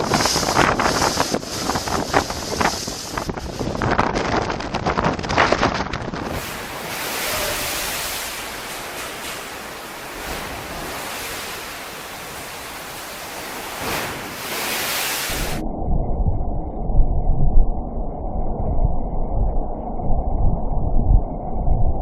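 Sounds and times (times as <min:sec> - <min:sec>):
heavy sea waves: 0:00.0 - 0:15.6
wind buffeting microphone: 0:00.0 - 0:22.0
wind rushing: 0:00.0 - 0:22.0.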